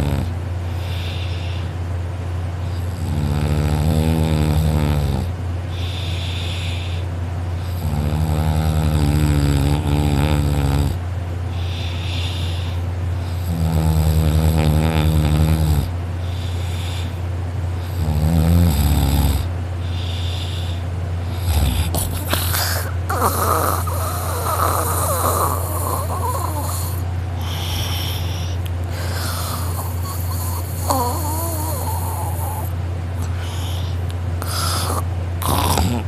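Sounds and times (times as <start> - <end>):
man snoring: 0.0 - 1.7, 2.6 - 11.0, 11.6 - 17.2, 17.8 - 36.0
steady low hum: 0.0 - 36.0
soft breathing: 0.6 - 1.9, 5.7 - 7.2, 11.5 - 13.4, 16.2 - 17.3, 19.8 - 36.0.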